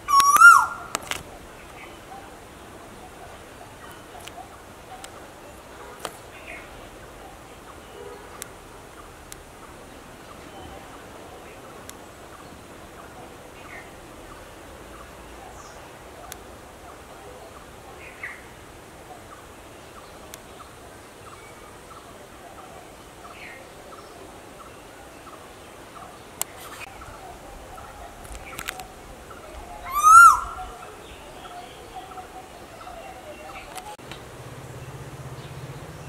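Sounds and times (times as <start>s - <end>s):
koel calling: 0.0s - 1.0s, 29.8s - 31.0s
faint bird calls: 0.0s - 18.6s, 19.2s - 34.0s.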